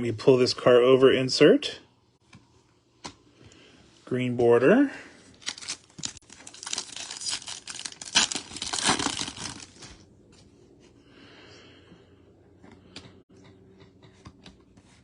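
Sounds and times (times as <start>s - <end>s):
card pack wrapper tearing and crinkling: 5.4s - 9.9s.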